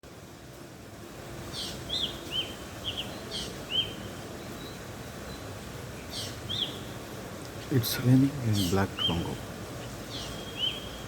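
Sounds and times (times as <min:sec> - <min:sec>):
steady background hiss: 0:00.0 - 0:11.0
bird calling clear notes: 0:07.5 - 0:11.0
harsh rasping bird calls: 0:07.5 - 0:11.0.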